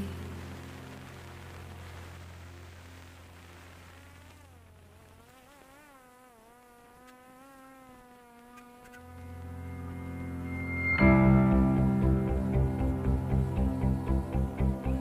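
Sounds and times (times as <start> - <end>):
background music: 0.0 - 3.8, 9.3 - 15.0
drone propellers buzzing: 0.0 - 15.0.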